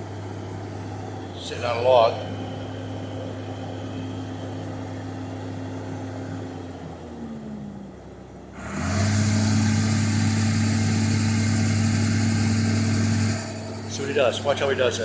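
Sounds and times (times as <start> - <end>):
excavator engine running: 0.0 - 15.0.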